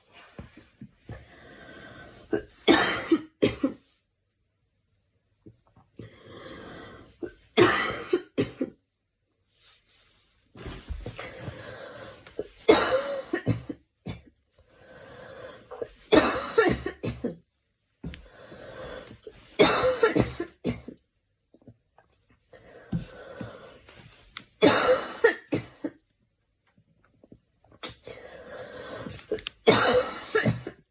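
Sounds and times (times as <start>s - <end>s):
girl coughing: 2.3s - 3.8s, 7.6s - 8.7s, 12.7s - 14.3s, 16.1s - 17.4s, 19.6s - 21.0s, 24.6s - 26.0s, 29.3s - 30.9s.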